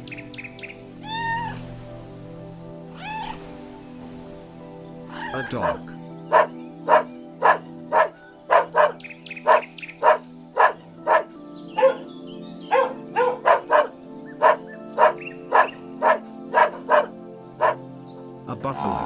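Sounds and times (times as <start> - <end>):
background music: 0.0 - 19.0
dog barking: 5.6 - 12.1, 12.7 - 17.9.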